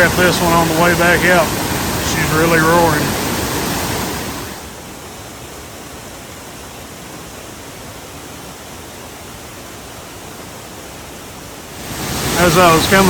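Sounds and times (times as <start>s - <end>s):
small waterfall roaring: 0.0s - 13.0s.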